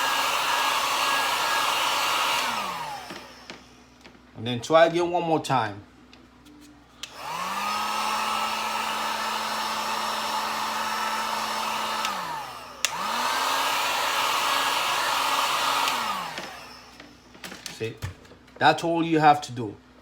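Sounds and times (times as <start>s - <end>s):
heat gun fan motor running: 0.0s - 4.2s, 7.0s - 18.2s
heat gun switch click: 7.0s - 7.3s, 11.9s - 13.1s, 15.8s - 16.5s.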